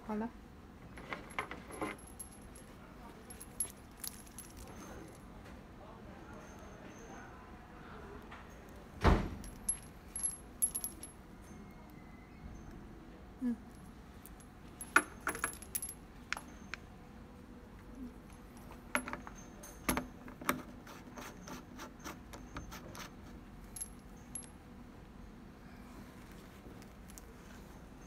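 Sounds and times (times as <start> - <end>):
metallic clicks and clinks: 1.0 - 5.2, 9.4 - 11.2, 14.2 - 16.8.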